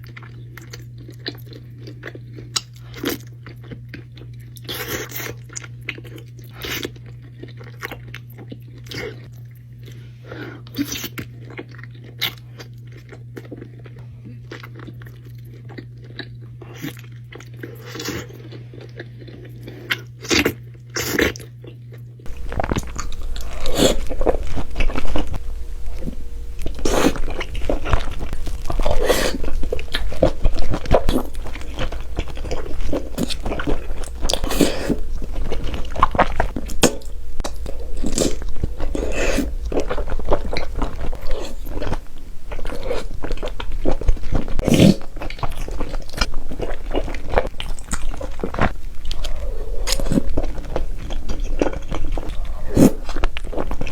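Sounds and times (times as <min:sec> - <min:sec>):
chewing and wet smacking: 0:00.0 - 0:53.9
low hum: 0:22.3 - 0:53.8.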